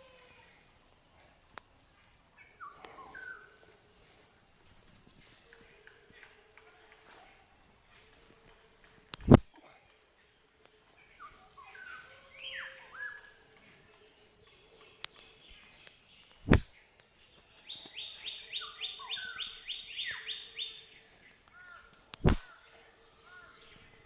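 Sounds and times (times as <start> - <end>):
songbirds singing: 0.0 - 24.0
sharp loud smacks: 9.2 - 9.5, 16.4 - 16.7, 22.2 - 22.5.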